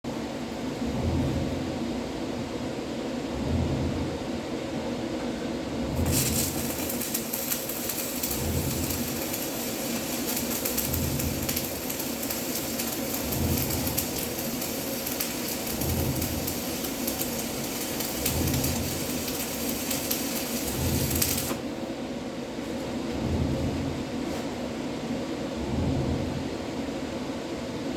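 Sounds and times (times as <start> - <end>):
welding arc crackling and sizzling: 5.9 - 21.8.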